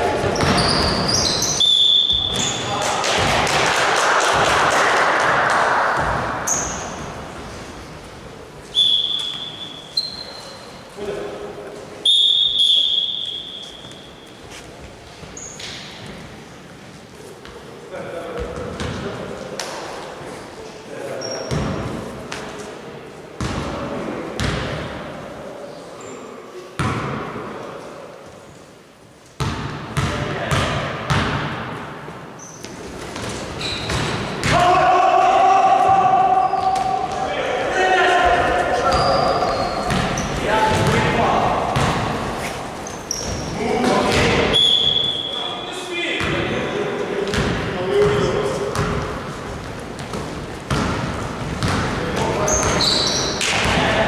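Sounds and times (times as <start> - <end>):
basketball bouncing on gym floor: 0.2 - 1.1, 29.4 - 31.6, 38.9 - 41.1, 41.7 - 42.2, 47.3 - 52.9.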